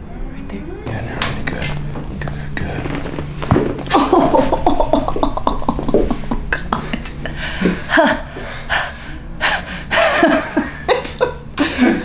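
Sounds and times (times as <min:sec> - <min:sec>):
people murmuring: 0:00.9 - 0:03.2.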